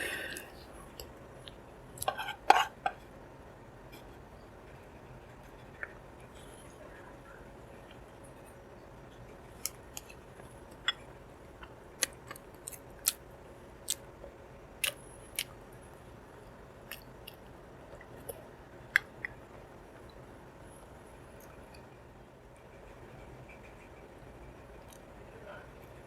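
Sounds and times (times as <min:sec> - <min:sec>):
mouth chewing wet clicks: 0:16.8 - 0:19.4.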